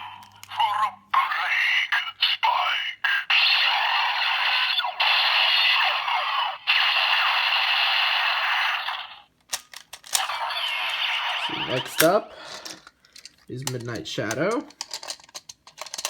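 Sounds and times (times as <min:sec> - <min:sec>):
toy handling clicks: 0:00.2 - 0:00.6, 0:09.4 - 0:16.0.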